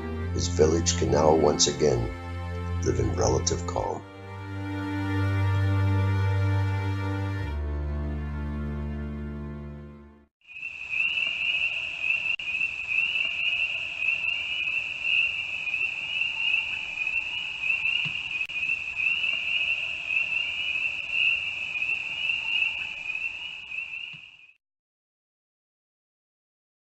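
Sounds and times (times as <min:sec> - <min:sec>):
insects or frogs trilling: 0:10.4 - 0:24.6.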